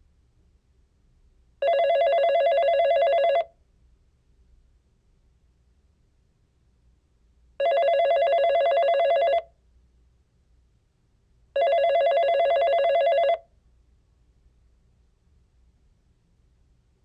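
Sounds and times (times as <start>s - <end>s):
telephone ringing: 1.6s - 3.5s, 7.6s - 9.5s, 11.6s - 13.5s.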